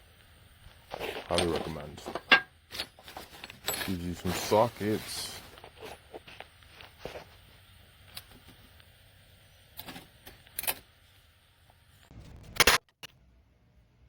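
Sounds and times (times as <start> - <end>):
metal tools clattering: 0.9 - 6.4
metal tools clicking and clinking: 1.2 - 6.4.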